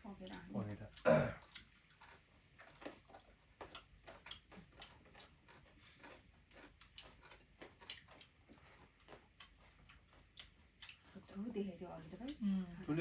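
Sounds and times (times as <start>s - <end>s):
people chewing chicken: 0.0s - 13.0s.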